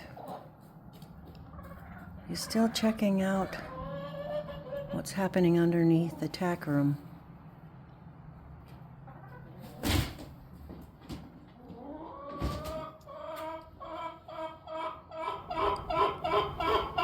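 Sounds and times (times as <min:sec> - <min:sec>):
hen clucking: 0:01.4 - 0:06.8, 0:09.0 - 0:09.8, 0:11.5 - 0:17.0.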